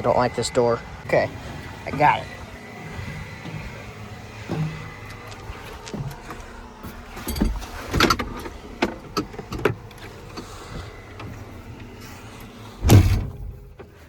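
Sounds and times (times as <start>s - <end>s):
tractor engine running: 0.0s - 14.0s
knocks and clicks of handling: 4.4s - 12.1s.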